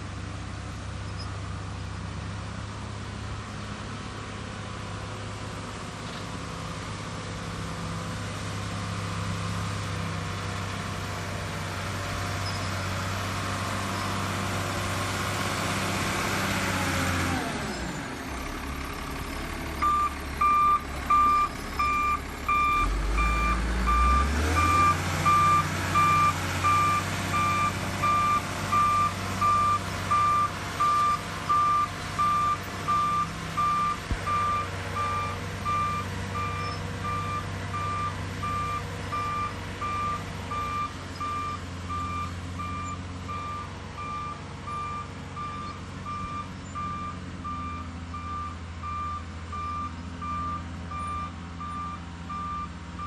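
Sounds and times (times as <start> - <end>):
heavy machine engine running: 0.0 - 53.0
reversing alarm beeping: 19.8 - 53.0.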